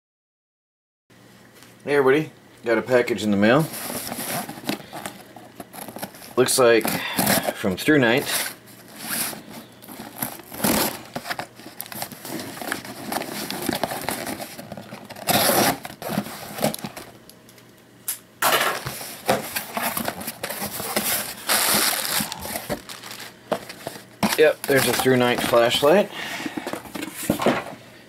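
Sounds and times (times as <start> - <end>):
package packaging tearing and crinkling: 3.6 - 17.3, 18.4 - 26.0.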